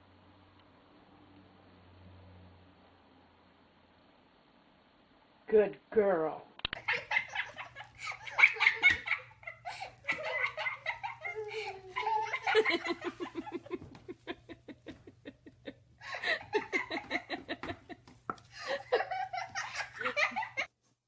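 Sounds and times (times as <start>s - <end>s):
person laughing: 6.8s - 20.7s.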